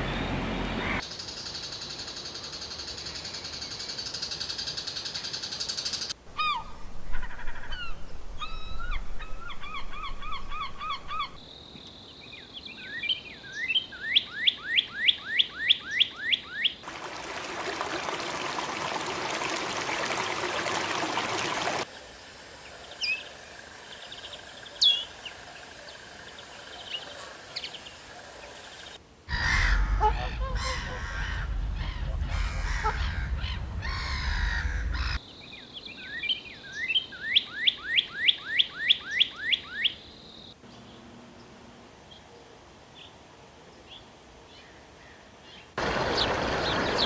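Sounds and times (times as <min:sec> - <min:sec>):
bird hissing: 0:22.5 - 0:35.2
sharp downward-sweeping bird notes: 0:29.3 - 0:35.2.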